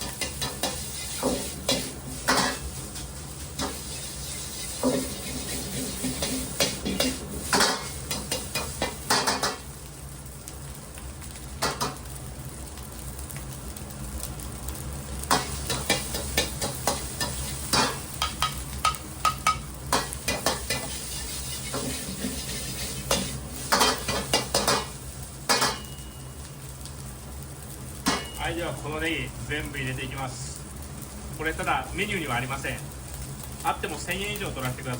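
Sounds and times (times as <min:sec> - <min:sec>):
rice sizzling: 0:00.0 - 0:34.9
metal utensil clanking on pan: 0:15.3 - 0:24.9, 0:25.5 - 0:26.1.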